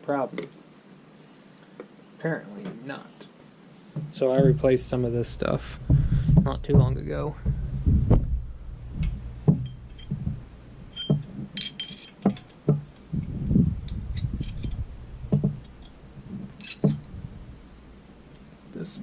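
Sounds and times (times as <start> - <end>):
soft knocks: 5.4 - 10.5, 12.2 - 13.0, 13.6 - 17.2
metallic ring: 9.2 - 12.6, 13.8 - 16.0, 16.6 - 17.8
small metal parts clinking: 10.9 - 12.6, 13.8 - 14.8, 16.6 - 17.0.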